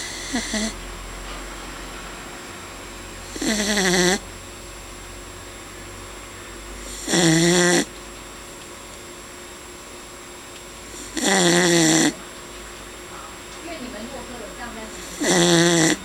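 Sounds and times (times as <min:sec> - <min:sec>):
dog snoring: 0:00.0 - 0:02.4, 0:03.2 - 0:04.3, 0:06.8 - 0:07.9, 0:10.9 - 0:12.3, 0:14.7 - 0:16.0.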